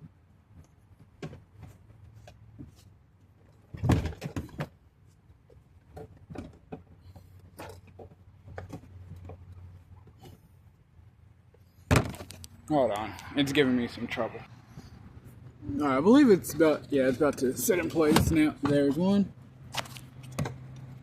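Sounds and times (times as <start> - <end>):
car door parts clicking and knocking: 5.5 - 10.2, 11.8 - 12.5, 19.7 - 20.8.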